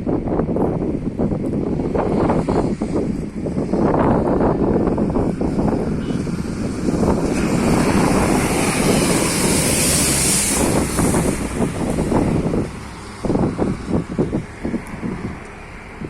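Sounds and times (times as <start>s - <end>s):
wind buffeting microphone: 0.0s - 16.0s
rain: 5.0s - 13.9s.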